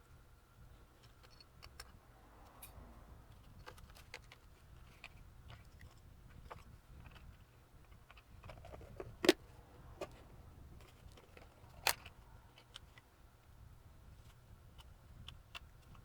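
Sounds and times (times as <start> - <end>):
light ticks of handled parts: 0.8 - 9.4.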